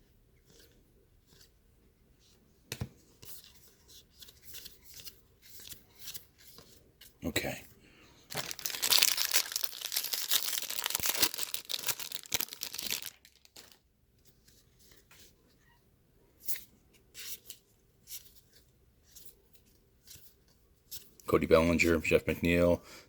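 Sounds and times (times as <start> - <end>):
cards rustling and clicking: 8.3 - 13.8
foil wrapper tearing and crinkling: 8.3 - 13.8.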